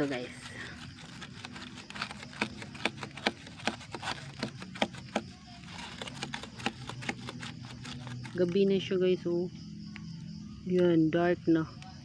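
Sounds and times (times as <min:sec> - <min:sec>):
food grilling crackles: 0:00.0 - 0:08.6.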